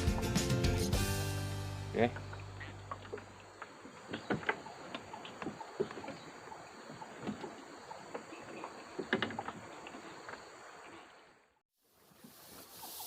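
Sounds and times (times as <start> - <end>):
steady high hiss: 11.9 - 13.0.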